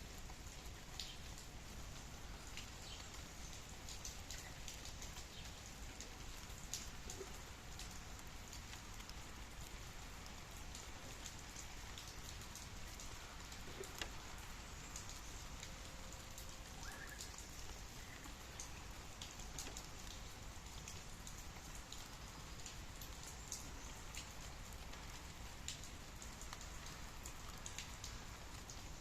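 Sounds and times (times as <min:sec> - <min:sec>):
light rain falling: 0:00.0 - 0:29.0
single raindrops landing: 0:10.2 - 0:28.9.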